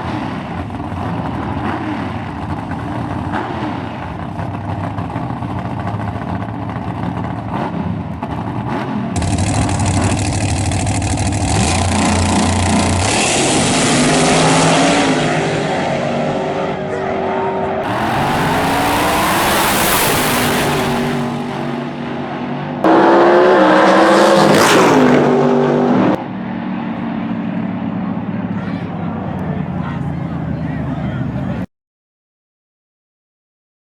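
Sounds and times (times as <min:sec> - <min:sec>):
race car engines revving: 0:17.8 - 0:21.8.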